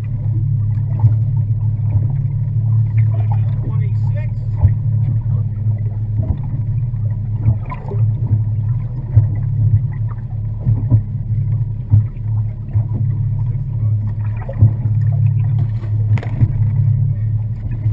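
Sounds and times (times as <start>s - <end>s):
boat engine humming: 0.0s - 17.9s
knocks and thumps: 4.5s - 5.2s, 6.2s - 6.7s, 7.4s - 9.9s, 14.2s - 17.0s.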